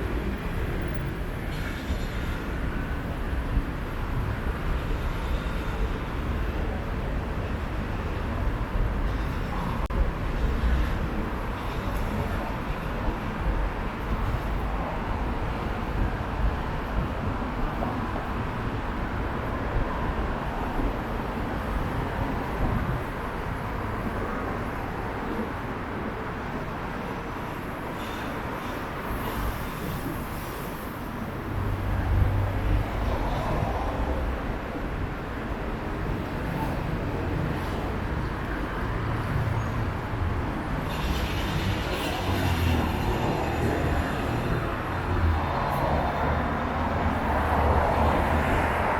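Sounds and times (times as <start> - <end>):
road traffic rumble: 0.0 - 48.9.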